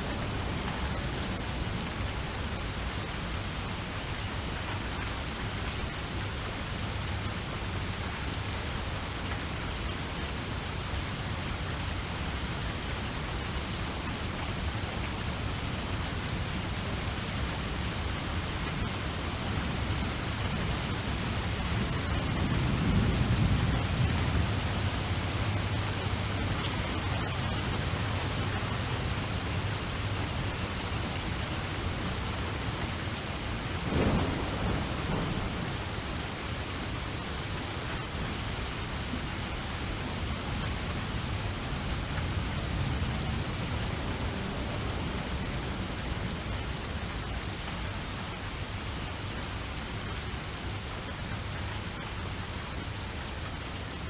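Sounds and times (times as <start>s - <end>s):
steady rain falling: 0.0s - 54.0s
low rumbling thunder: 18.7s - 38.5s
sharp thunder clap: 33.8s - 36.3s.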